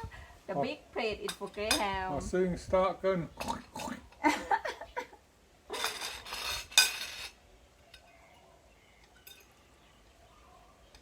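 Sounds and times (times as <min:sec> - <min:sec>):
tableware clinking: 0:05.7 - 0:08.1, 0:09.0 - 0:09.6.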